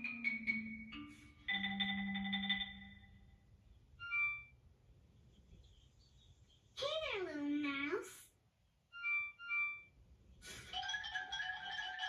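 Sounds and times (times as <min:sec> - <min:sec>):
cartoon music: 0:10.8 - 0:12.0.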